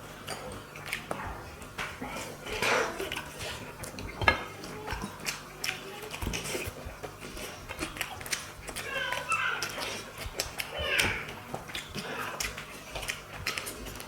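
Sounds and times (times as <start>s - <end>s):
plates and dishes clinking: 1.7s - 5.2s.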